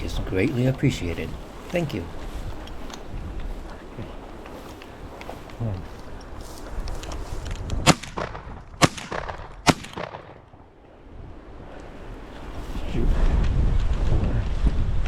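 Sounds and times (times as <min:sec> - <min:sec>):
shotgun shots: 0:07.8 - 0:10.5.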